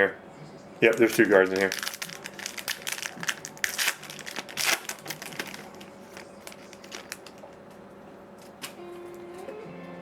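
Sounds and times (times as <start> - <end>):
card pack wrapper crinkling: 0.8 - 7.6.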